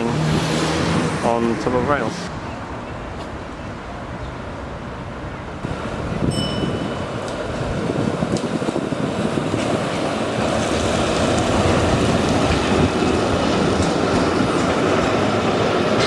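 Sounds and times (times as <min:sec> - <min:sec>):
tram rumbling on rails: 0:00.0 - 0:16.0
wind buffeting microphone: 0:05.4 - 0:16.0.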